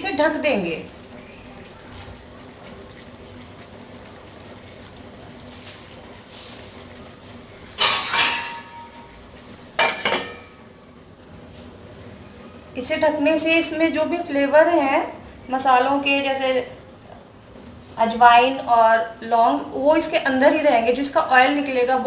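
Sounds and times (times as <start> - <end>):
liquid boiling in a pot: 0.0 - 22.0
pot lid clinking: 7.8 - 9.1, 9.8 - 10.6.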